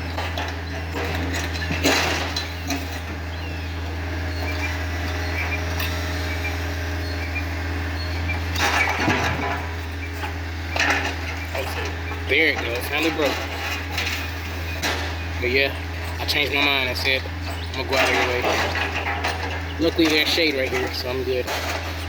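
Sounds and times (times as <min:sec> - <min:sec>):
diesel excavator engine running: 0:00.0 - 0:22.0
steel scraping and clunking on concrete: 0:08.5 - 0:22.0.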